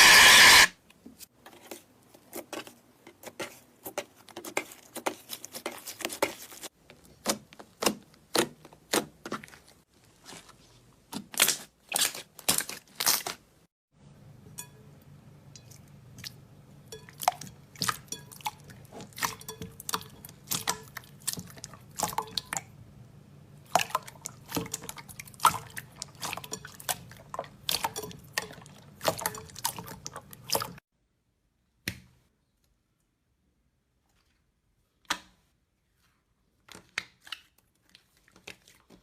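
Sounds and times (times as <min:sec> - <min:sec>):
low steady hum: 0:14.0 - 0:30.8.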